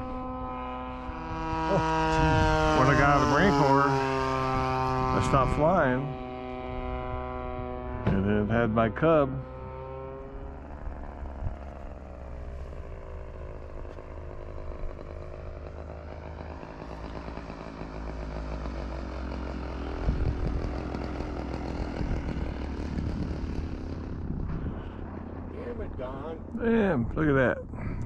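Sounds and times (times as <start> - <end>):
model airplane engine buzzing: 0.0 - 26.7
low bumps: 0.0 - 28.0
low rumble: 0.0 - 28.0.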